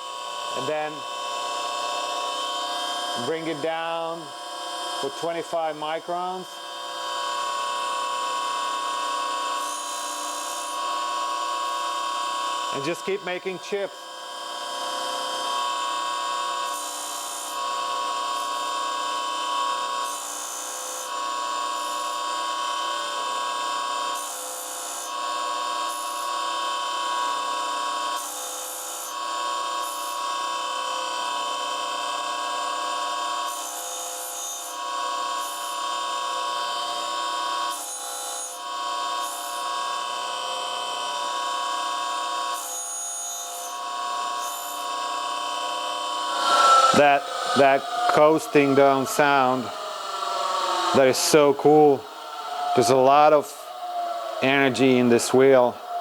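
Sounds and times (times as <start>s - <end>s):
grinding wheel whining: 46.0s - 56.0s
hissing grinding bursts: 46.2s - 56.0s.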